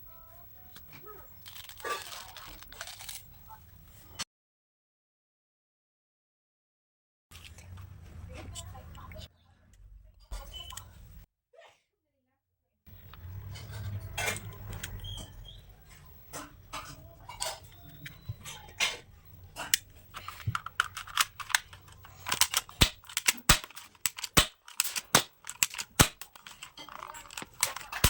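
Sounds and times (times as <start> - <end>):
toy gun plastic clicks: 19.6 - 28.0.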